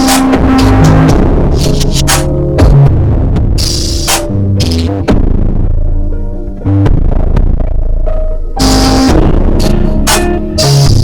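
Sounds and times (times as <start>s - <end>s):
drum beat: 0.0s - 4.8s
synth bass notes: 0.0s - 11.0s.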